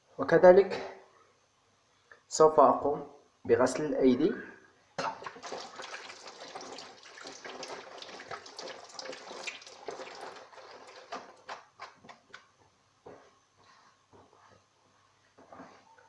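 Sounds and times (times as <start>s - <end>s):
tap water running into sink: 5.0s - 11.6s
water splashes and drips: 5.2s - 11.6s.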